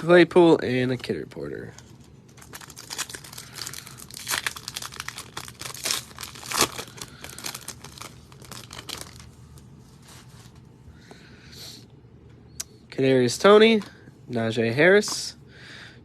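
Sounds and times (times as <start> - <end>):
plastic wrapper tearing and crumpling: 1.8 - 9.4.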